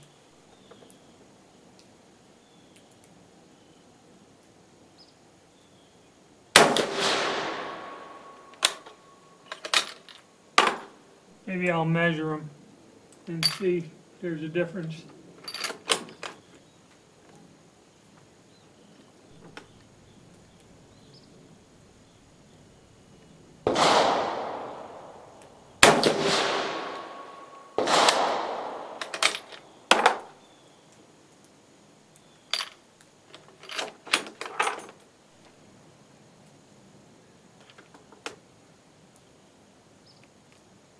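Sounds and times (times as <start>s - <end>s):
rifle shots with echo: 6.6s - 9.1s, 23.6s - 29.4s.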